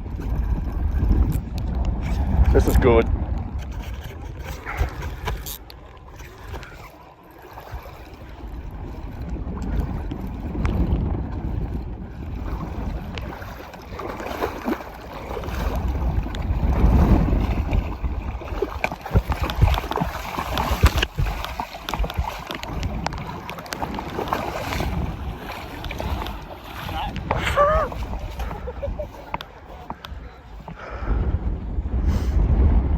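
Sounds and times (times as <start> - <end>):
wind buffeting microphone: 0.0 - 32.9.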